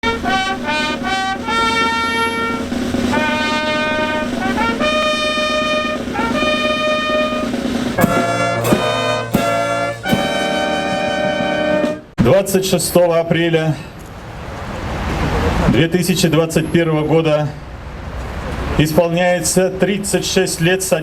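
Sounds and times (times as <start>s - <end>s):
brass melody of long notes: 0.0s - 12.2s
sharp accented strikes: 0.0s - 12.4s.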